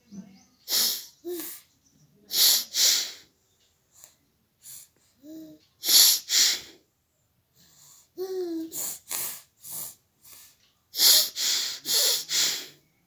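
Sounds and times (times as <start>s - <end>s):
child sneezing: 0.7s - 1.6s, 2.3s - 3.2s, 5.8s - 6.7s.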